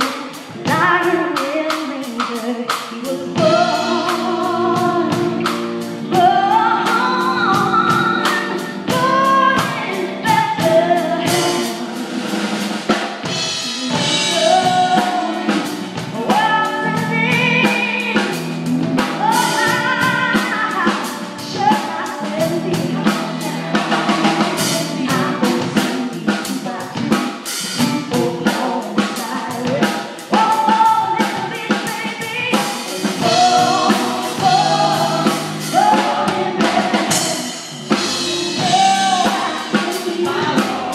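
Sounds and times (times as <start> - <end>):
band with drum kit: 0.0 - 40.9
lead singer: 0.0 - 40.9
backing vocals: 13.2 - 40.9.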